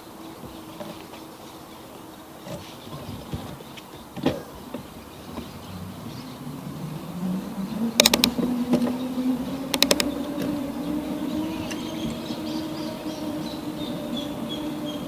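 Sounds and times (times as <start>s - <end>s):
bicycle tyre hum: 0.0s - 15.0s
sharp clicks: 8.0s - 8.4s, 9.7s - 10.1s.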